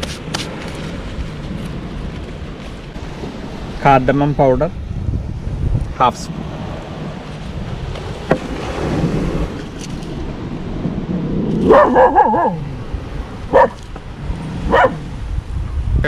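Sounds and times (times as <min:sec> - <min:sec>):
dog barking: 0:11.6 - 0:12.6, 0:13.5 - 0:13.8, 0:14.7 - 0:15.0.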